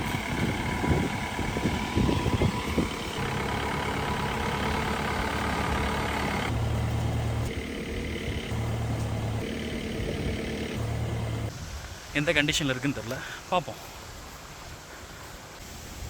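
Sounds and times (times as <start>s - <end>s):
diesel engine running: 0.0s - 11.5s.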